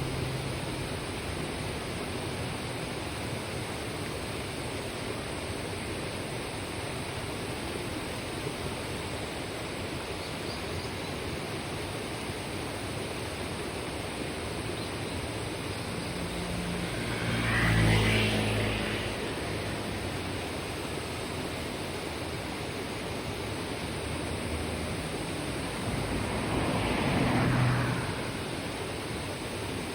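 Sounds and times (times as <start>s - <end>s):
passing vehicle engine hum: 0.0s - 5.3s, 15.3s - 29.9s.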